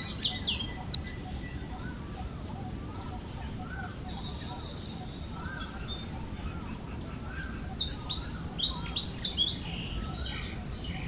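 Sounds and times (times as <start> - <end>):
birds chirping: 0.0 - 2.0
low rumble of breeze: 0.0 - 11.0.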